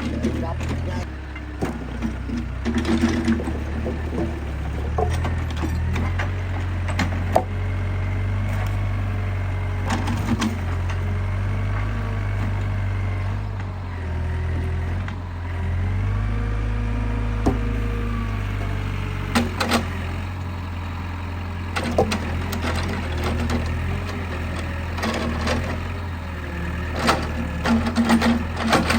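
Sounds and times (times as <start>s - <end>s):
wooden knocks of logs: 0.0s - 13.7s, 15.8s - 20.5s, 21.7s - 26.0s
diesel engine running: 0.0s - 28.9s.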